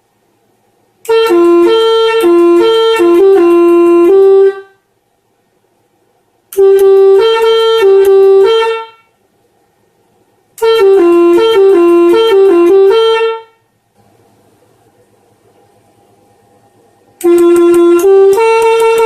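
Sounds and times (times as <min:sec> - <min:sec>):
faint low hum: 0:00.0 - 0:19.0
multi-tone air horn tunes: 0:01.0 - 0:04.8, 0:06.5 - 0:09.2, 0:10.6 - 0:13.7, 0:17.2 - 0:19.0.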